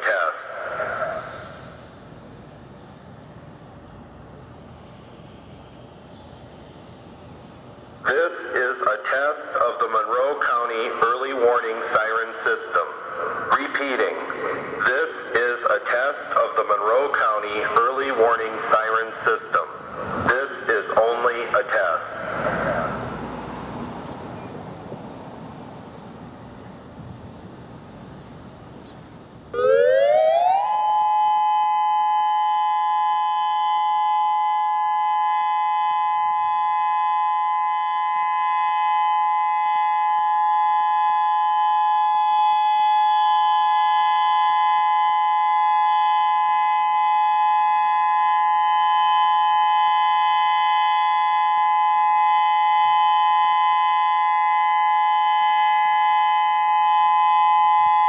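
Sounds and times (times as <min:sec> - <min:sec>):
electronic warning siren: 0:00.0 - 0:02.4, 0:29.5 - 0:58.0.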